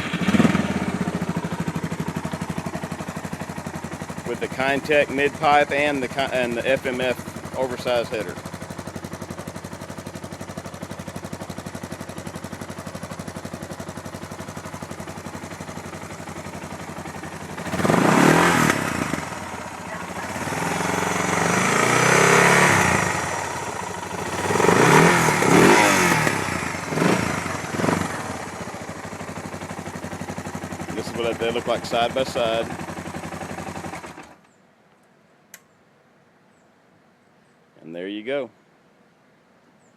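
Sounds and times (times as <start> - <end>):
motorcycle engine idling and revving: 0.0 - 34.6.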